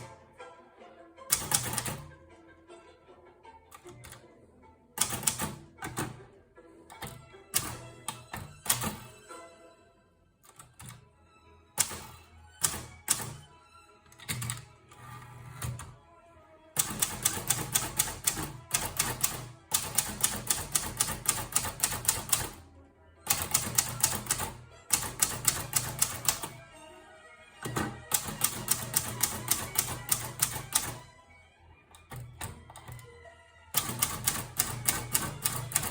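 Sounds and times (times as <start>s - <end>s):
typewriter keystrokes: 1.3s - 2.1s, 3.8s - 4.2s, 5.0s - 6.2s, 6.9s - 9.1s, 10.5s - 11.0s, 11.8s - 13.5s, 14.2s - 14.8s, 15.6s - 15.9s, 16.8s - 22.6s, 23.3s - 26.6s, 27.6s - 31.0s, 32.0s - 33.1s, 33.8s - 35.9s.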